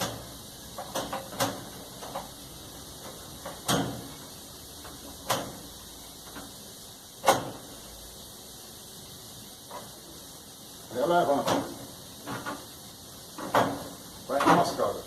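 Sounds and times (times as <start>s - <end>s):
knocks and clunks of dryer panel: 0.0s - 2.2s, 3.4s - 4.1s, 7.2s - 7.6s, 11.4s - 12.6s, 13.4s - 14.7s.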